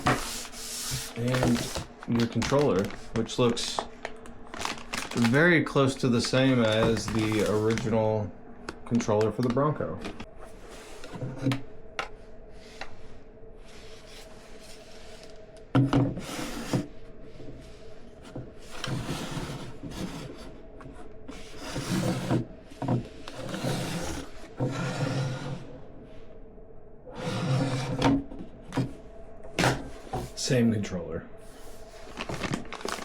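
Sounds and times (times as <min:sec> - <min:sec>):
packaging rustling and scraping: 0:00.0 - 0:11.6, 0:13.6 - 0:25.8, 0:31.4 - 0:33.0.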